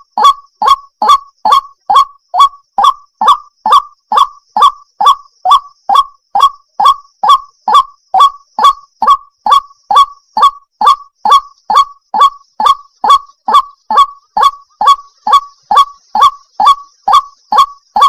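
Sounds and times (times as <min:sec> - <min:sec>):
waterhen calling: 0:00.0 - 0:18.0.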